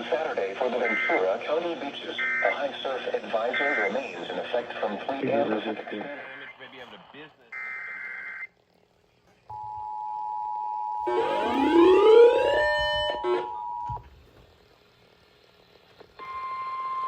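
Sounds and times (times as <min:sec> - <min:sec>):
two-tone alarm chord: 0:09.5 - 0:14.0
buzzy rising tone: 0:11.0 - 0:14.0
steady alert tone: 0:11.0 - 0:14.0.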